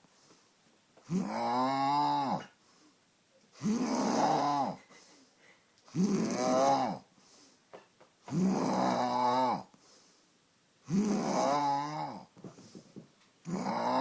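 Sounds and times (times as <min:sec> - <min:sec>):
quiet breaths: 0:00.0 - 0:14.0
pitched snores: 0:01.0 - 0:02.6, 0:03.6 - 0:04.9, 0:05.9 - 0:07.1, 0:08.3 - 0:09.7, 0:10.8 - 0:12.3, 0:13.4 - 0:14.0.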